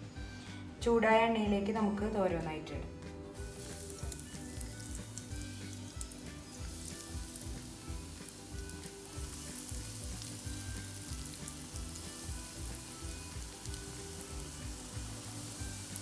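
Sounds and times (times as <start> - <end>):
fish frying in hot oil: 3.4 - 16.0.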